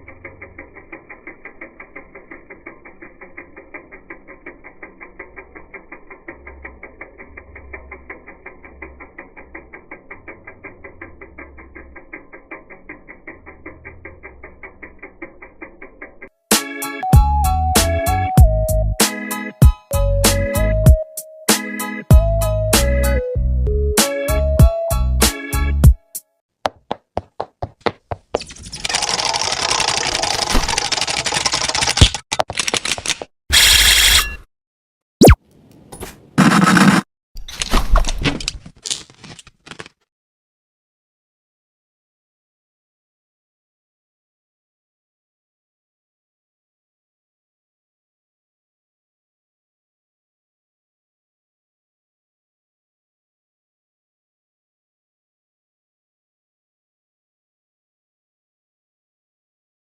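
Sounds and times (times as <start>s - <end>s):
rapid even clicking: 28.8s - 33.3s.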